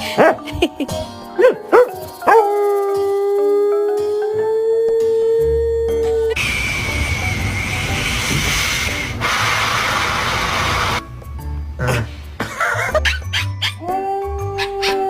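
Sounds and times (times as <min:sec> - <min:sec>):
loud steady hiss: 0:06.4 - 0:11.0.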